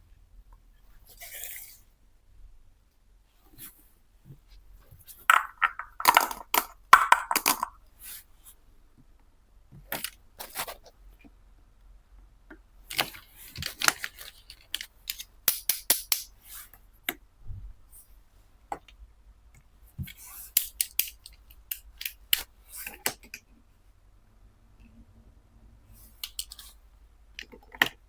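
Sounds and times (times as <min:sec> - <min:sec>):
plastic toy pieces clicking: 0:05.3 - 0:07.8, 0:12.9 - 0:16.3, 0:20.6 - 0:22.5.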